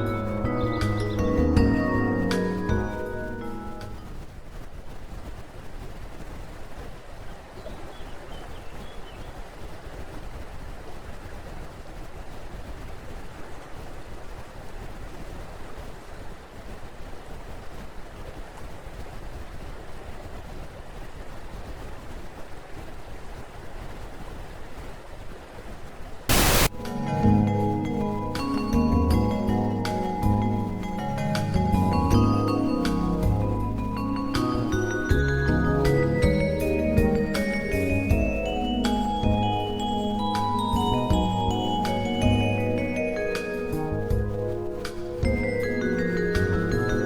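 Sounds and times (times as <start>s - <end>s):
steady hissing noise: 0.0s - 47.0s
short loud noise burst: 26.3s - 26.8s.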